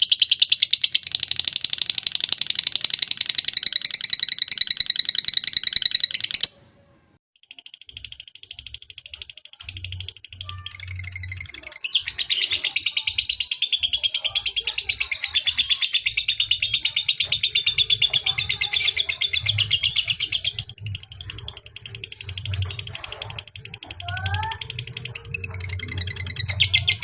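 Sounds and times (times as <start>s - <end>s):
lovebird rattling call: 0.0s - 6.6s.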